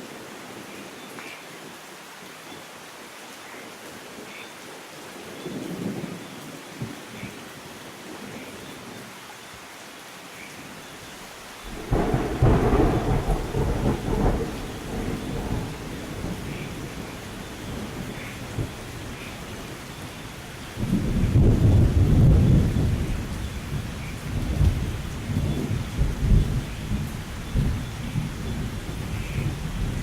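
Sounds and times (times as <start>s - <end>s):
steady rain: 0.0s - 30.0s
rolling thunder: 11.6s - 20.0s, 20.6s - 30.0s.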